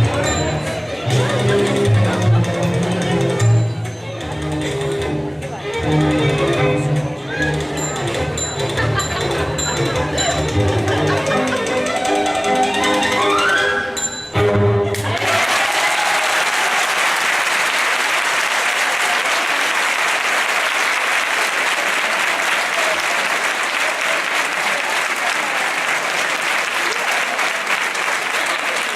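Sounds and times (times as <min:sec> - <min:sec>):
audience applauding: 0:14.9 - 0:28.9.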